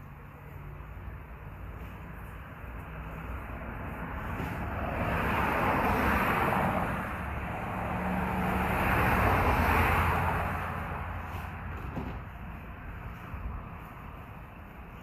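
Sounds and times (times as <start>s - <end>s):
road vehicles driving past: 0.0s - 15.0s.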